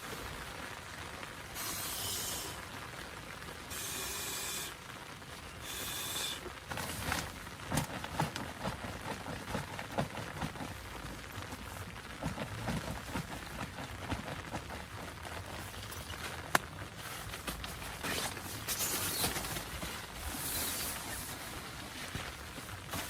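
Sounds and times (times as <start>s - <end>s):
steady rain falling: 0.0s - 23.0s
short hissing bursts: 1.5s - 2.6s, 3.7s - 4.8s, 5.6s - 6.5s.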